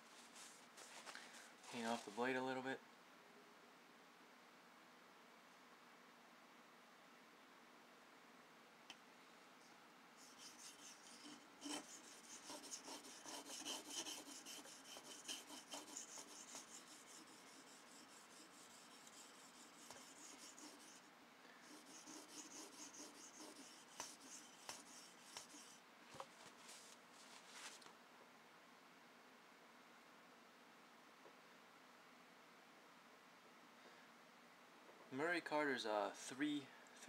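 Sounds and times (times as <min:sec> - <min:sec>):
scraping strokes on knife blade: 0:10.2 - 0:25.8.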